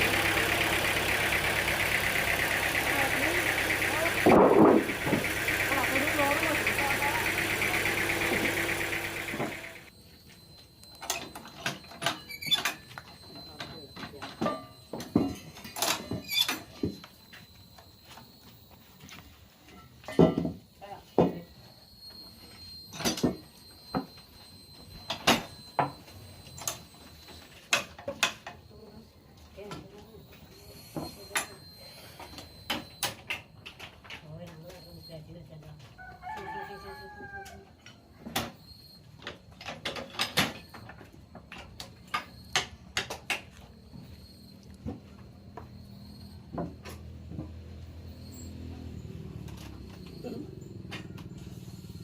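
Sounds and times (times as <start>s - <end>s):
low machine hum: 0.0s - 9.9s
faint high-pitched tone: 0.0s - 43.1s.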